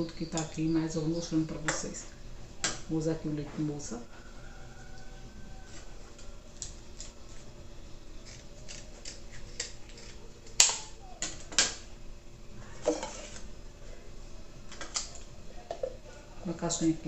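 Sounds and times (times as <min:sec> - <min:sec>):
utensils tapping and clicking: 0:00.0 - 0:00.6.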